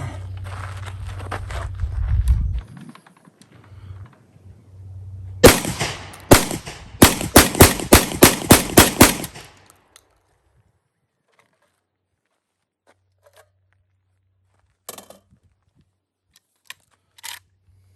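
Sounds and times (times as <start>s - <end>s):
shotgun shots: 5.4s - 9.6s.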